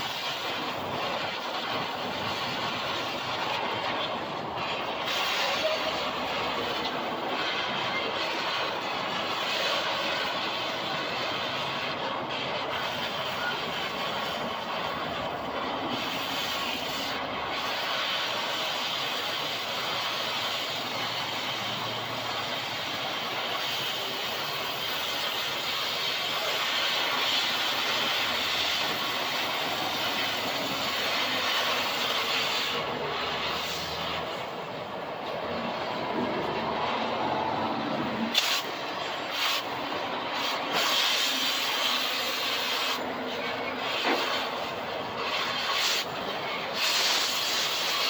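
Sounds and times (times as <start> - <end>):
moving vehicle rushing noise: 32.6 - 40.2.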